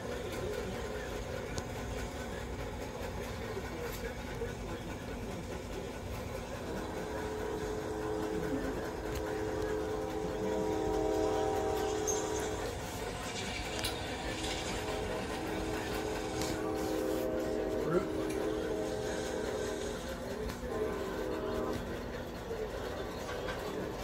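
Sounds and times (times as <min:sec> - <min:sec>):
humming whine: 0:06.6 - 0:23.9.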